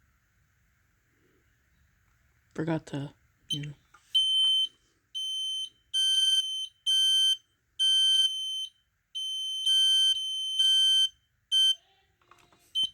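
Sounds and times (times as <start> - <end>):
smoke alarms beeping: 3.5 - 11.8.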